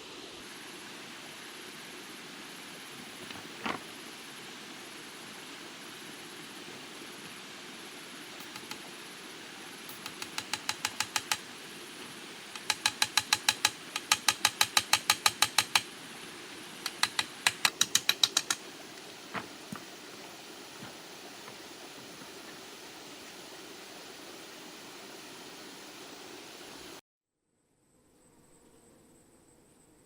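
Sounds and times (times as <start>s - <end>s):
steady hiss: 0.0s - 27.0s
rapid sharp clicks: 8.4s - 8.9s, 9.9s - 11.5s, 12.5s - 16.0s, 16.8s - 20.2s.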